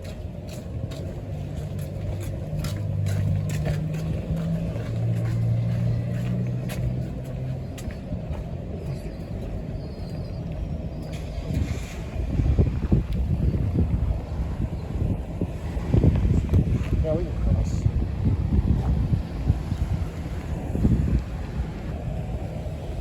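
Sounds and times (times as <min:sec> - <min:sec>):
vehicle engine humming: 0:00.0 - 0:16.7
street traffic: 0:00.0 - 0:23.0.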